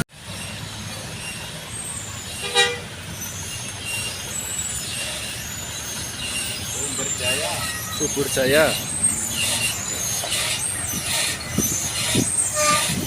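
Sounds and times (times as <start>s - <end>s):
road traffic rumble: 0.0s - 13.0s
vehicle horn toot: 2.4s - 2.9s, 12.5s - 13.0s.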